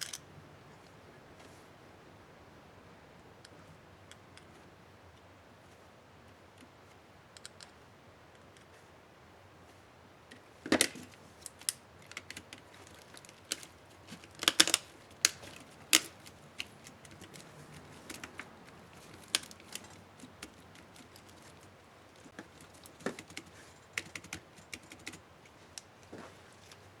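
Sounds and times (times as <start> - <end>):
plastic keyboard keys clicking: 10.7 - 21.7, 22.3 - 25.2
keycaps snapping: 10.7 - 25.2.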